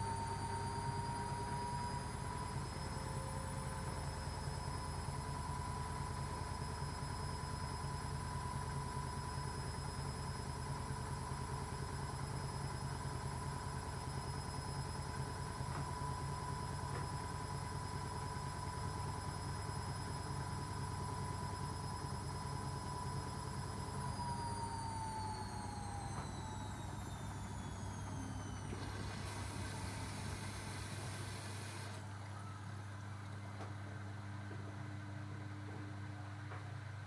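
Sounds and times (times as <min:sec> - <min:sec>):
washing machine drum whining: 0:24.2 - 0:32.0.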